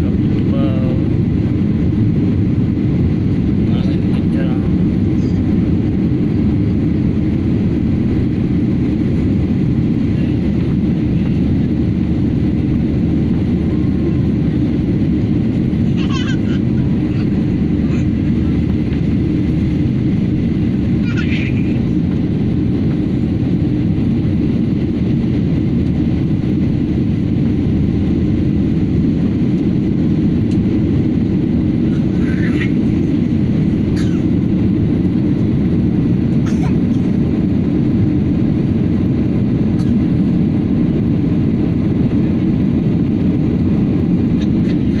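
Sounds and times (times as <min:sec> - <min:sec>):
airplane low rumble: 0:00.0 - 0:45.0.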